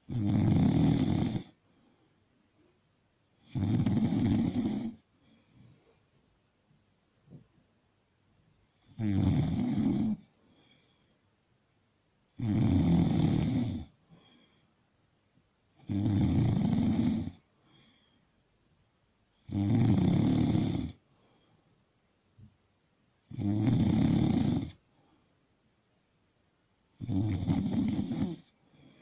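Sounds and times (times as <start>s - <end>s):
person snoring loudly: 0.0s - 1.5s, 3.4s - 5.0s, 8.8s - 10.2s, 12.4s - 13.9s, 15.8s - 17.4s, 19.4s - 21.0s, 23.3s - 24.8s, 27.0s - 28.5s
quiet breathing: 1.0s - 7.6s, 8.6s - 11.6s, 13.3s - 15.9s, 16.6s - 19.5s, 20.2s - 22.6s, 24.1s - 25.6s, 27.3s - 29.0s.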